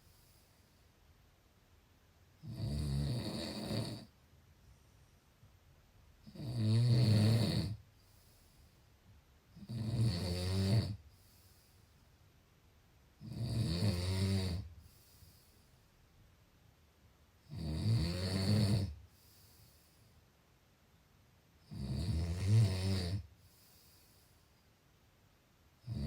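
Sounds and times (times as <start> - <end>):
quiet breathing: 0.0 - 2.6, 3.5 - 6.4, 7.6 - 9.9, 10.8 - 13.3, 14.6 - 16.5, 18.8 - 21.7, 23.2 - 26.0
person snoring: 2.4 - 4.1, 6.2 - 7.8, 9.6 - 11.0, 13.2 - 14.7, 17.5 - 19.0, 21.7 - 23.3.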